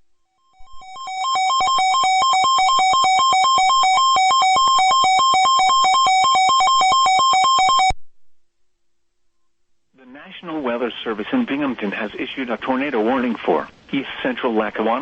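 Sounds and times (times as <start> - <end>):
two-pitch electronic alarm: 0.3 - 7.9.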